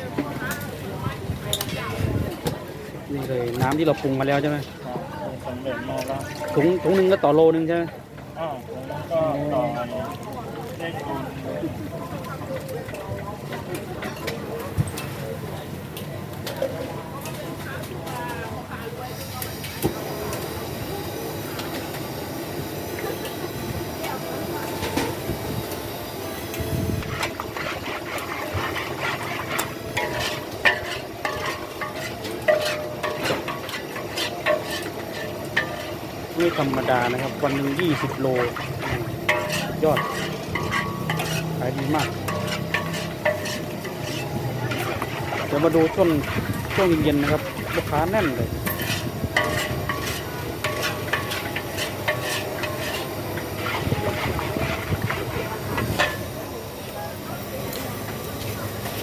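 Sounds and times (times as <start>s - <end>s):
food sizzling: 19.0s - 59.0s
metal spatula scraping a wok: 26.4s - 56.5s.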